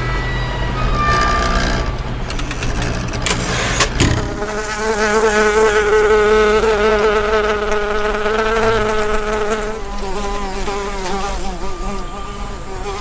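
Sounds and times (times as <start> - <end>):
short high tones: 0.0 - 2.2
cartoon insect buzz: 3.5 - 13.0.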